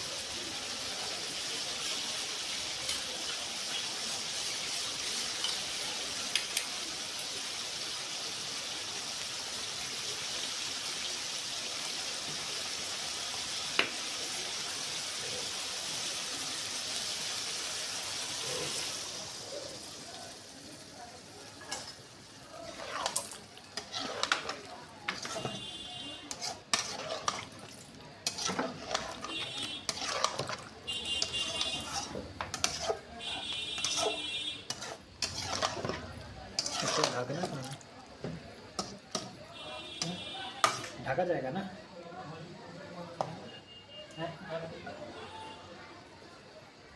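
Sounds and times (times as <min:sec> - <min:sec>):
food frying sizzle: 0:00.0 - 0:41.4
utensils scraping a pan: 0:22.6 - 0:37.7.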